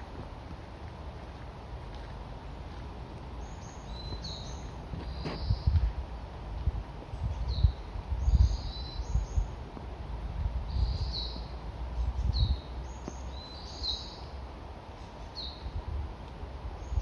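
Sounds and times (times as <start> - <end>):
songbird calling: 3.4 - 5.8, 7.2 - 9.6, 10.7 - 15.8, 16.8 - 17.0.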